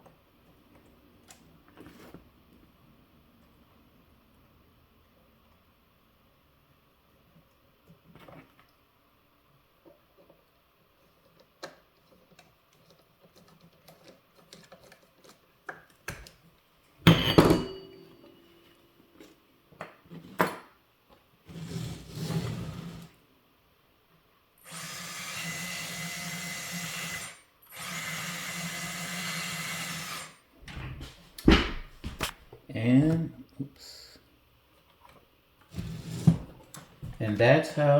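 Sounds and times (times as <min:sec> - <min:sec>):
small electric motor running: 0:24.6 - 0:30.3.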